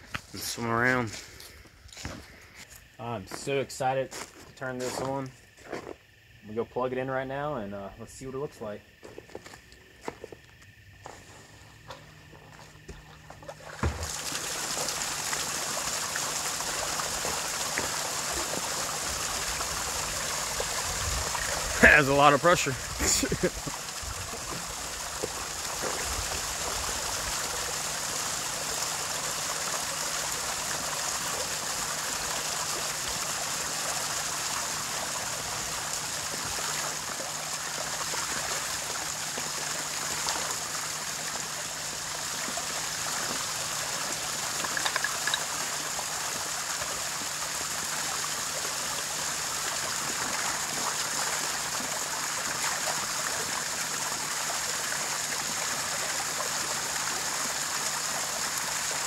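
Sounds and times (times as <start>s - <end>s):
water splashing: 12.3s - 59.0s
water gushing from a hose: 12.4s - 59.0s
water running down rock waterfall: 13.6s - 59.0s.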